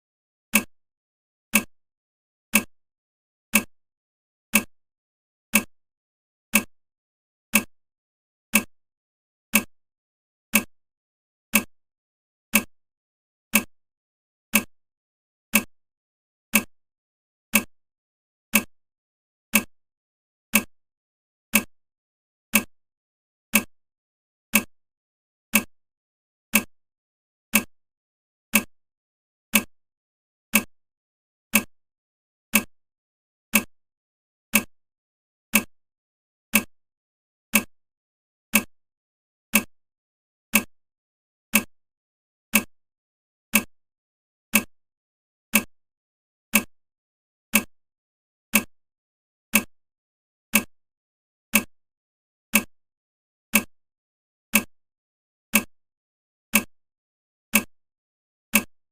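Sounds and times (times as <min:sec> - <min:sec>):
timer ticking: 0:00.5 - 0:00.7, 0:01.5 - 0:01.7, 0:02.5 - 0:02.7, 0:03.5 - 0:03.7, 0:04.5 - 0:04.7, 0:05.5 - 0:05.7, 0:06.5 - 0:06.7, 0:07.5 - 0:07.7, 0:08.5 - 0:08.7, 0:09.5 - 0:09.7, 0:10.5 - 0:10.7, 0:11.5 - 0:11.7, 0:12.5 - 0:12.7, 0:13.5 - 0:13.7, 0:14.5 - 0:14.7, 0:15.5 - 0:15.7, 0:16.5 - 0:16.7, 0:17.5 - 0:17.7, 0:18.5 - 0:18.7, 0:19.5 - 0:19.7, 0:20.5 - 0:20.7, 0:21.5 - 0:21.7, 0:22.5 - 0:22.7, 0:23.5 - 0:23.7, 0:24.5 - 0:24.7, 0:25.5 - 0:25.7, 0:26.5 - 0:26.7, 0:27.5 - 0:27.7, 0:28.5 - 0:28.7, 0:29.5 - 0:29.7, 0:30.5 - 0:30.7, 0:31.5 - 0:31.7, 0:32.5 - 0:32.7, 0:33.5 - 0:33.7, 0:34.5 - 0:34.7, 0:35.5 - 0:35.7, 0:36.5 - 0:36.7, 0:37.5 - 0:37.7, 0:38.5 - 0:38.7, 0:39.5 - 0:39.7, 0:40.5 - 0:40.7, 0:41.5 - 0:41.7, 0:42.5 - 0:42.7, 0:43.5 - 0:43.7, 0:44.5 - 0:44.7, 0:45.5 - 0:45.7, 0:46.5 - 0:46.7, 0:47.5 - 0:47.7, 0:48.5 - 0:48.7, 0:49.5 - 0:49.7, 0:50.5 - 0:50.7, 0:51.5 - 0:51.7, 0:52.5 - 0:52.7, 0:53.5 - 0:53.7, 0:54.5 - 0:54.7, 0:55.5 - 0:55.7, 0:56.5 - 0:56.7, 0:57.5 - 0:57.7, 0:58.5 - 0:58.7.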